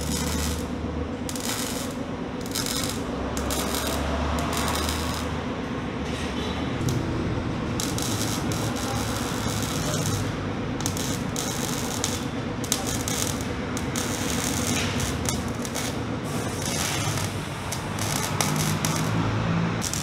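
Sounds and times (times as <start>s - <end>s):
welding crackling hiss: 0.0s - 5.4s, 7.7s - 20.0s
steady low hum: 0.0s - 20.0s.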